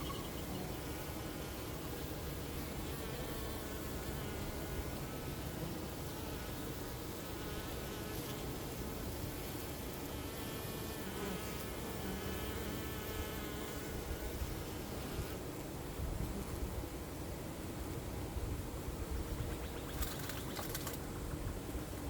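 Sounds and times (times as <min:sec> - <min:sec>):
honeybees buzzing: 0:00.0 - 0:15.4.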